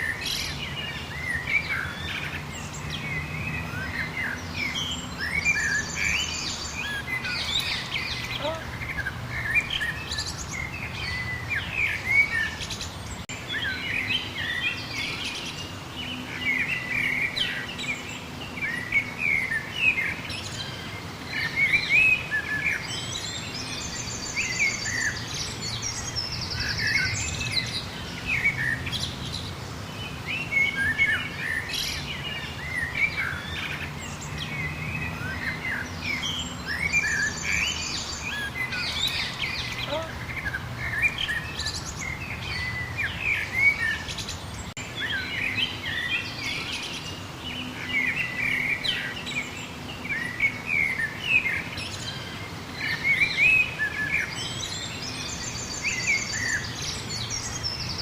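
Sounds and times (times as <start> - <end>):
birds chirping and singing: 0.0 - 58.0.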